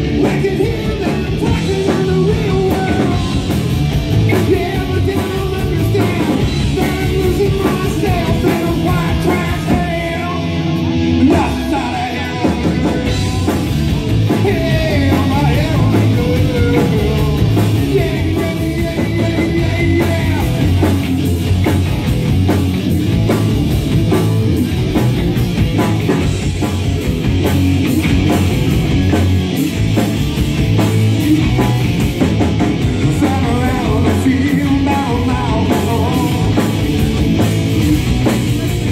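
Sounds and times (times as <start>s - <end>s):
person singing: 0.0s - 3.6s, 4.2s - 13.6s, 14.2s - 21.1s, 32.9s - 36.8s
live rock band: 0.0s - 38.9s.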